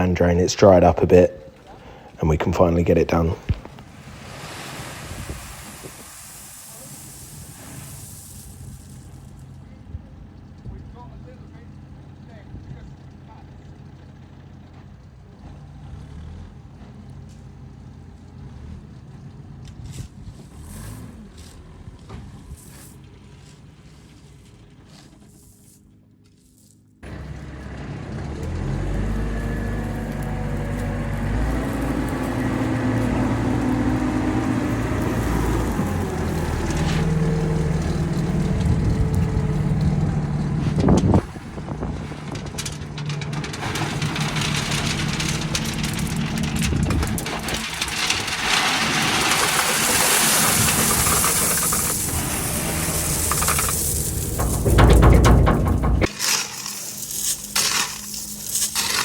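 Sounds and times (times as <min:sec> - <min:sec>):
loud hiss: 0:03.9 - 0:09.3
digger diesel engine running: 0:27.0 - 0:59.0
loud low rumble: 0:50.6 - 0:56.2.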